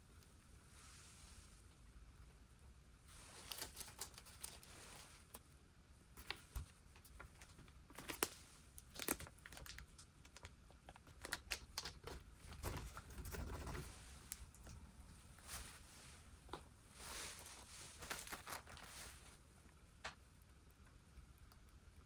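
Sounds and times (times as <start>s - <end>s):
clicks and crinkling of handled material: 3.1s - 20.2s.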